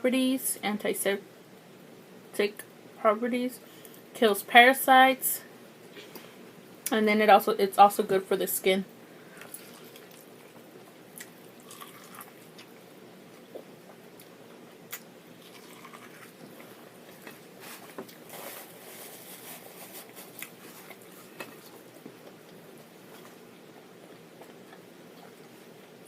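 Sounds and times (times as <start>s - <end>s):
soft chewing: 9.3s - 26.0s.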